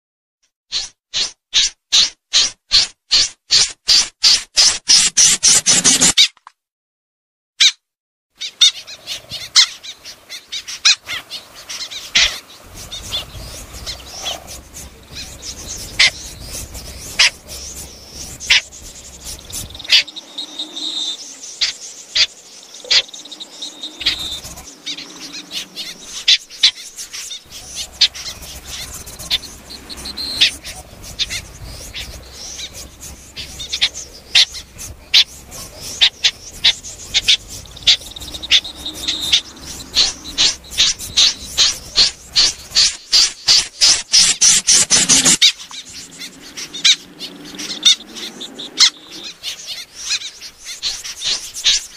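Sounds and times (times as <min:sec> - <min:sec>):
bird sharp call notes: 0:08.4 - 0:51.8
low hum: 0:12.6 - 0:21.4.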